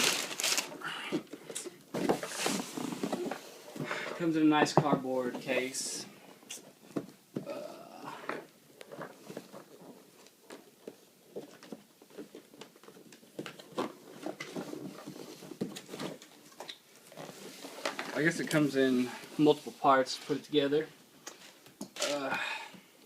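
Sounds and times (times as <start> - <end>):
packaging being handled: 0.0 - 1.6.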